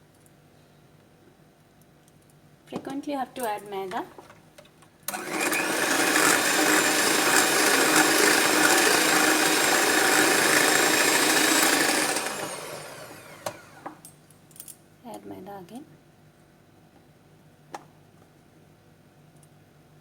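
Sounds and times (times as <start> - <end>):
electric mixer motor running: 5.1 - 14.0.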